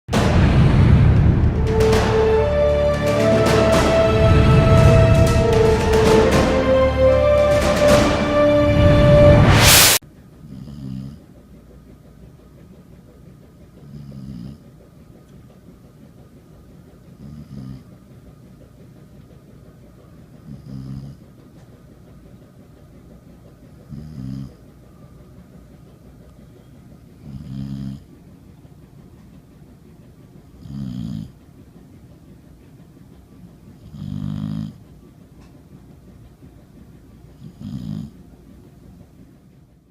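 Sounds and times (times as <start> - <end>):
loud intro music: 0.1 - 10.0
dog snoring: 10.4 - 11.2, 13.8 - 14.6, 17.2 - 17.9, 20.4 - 21.2, 23.9 - 24.6, 27.2 - 28.1, 30.6 - 31.4, 33.8 - 34.8, 37.3 - 38.2.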